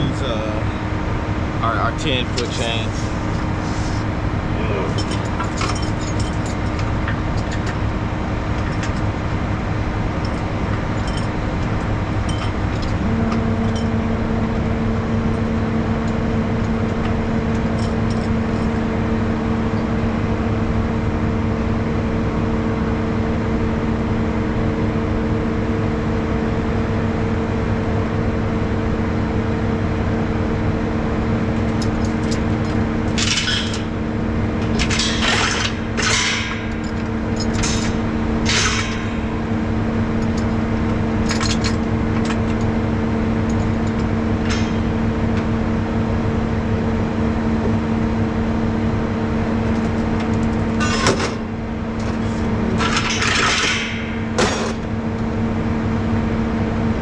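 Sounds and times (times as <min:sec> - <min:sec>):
steady higher hum: 0:00.0 - 0:57.0
truck engine running: 0:00.0 - 0:57.0
metal chains clinking: 0:04.8 - 0:07.8, 0:10.2 - 0:13.0, 0:31.7 - 0:34.0.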